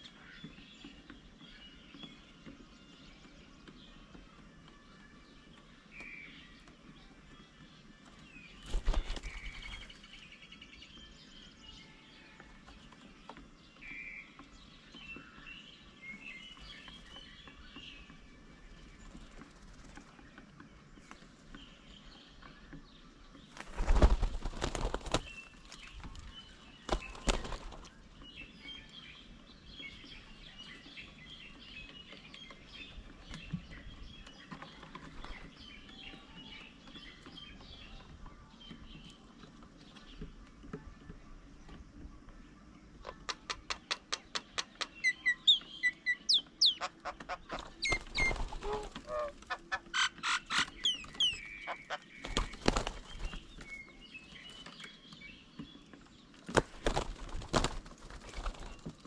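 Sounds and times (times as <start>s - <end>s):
small birds chirping: 0.0s - 59.0s
flurries of wingbeats: 8.6s - 10.0s, 23.5s - 26.2s, 26.8s - 27.9s, 46.5s - 53.7s, 56.5s - 58.9s.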